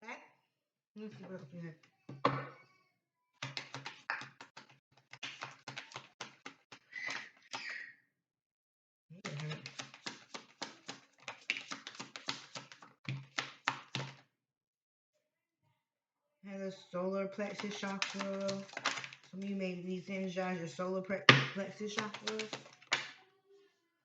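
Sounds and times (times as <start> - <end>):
cards shuffled by hand: 3.4 - 7.6, 9.2 - 14.2, 17.5 - 19.4, 21.7 - 23.2.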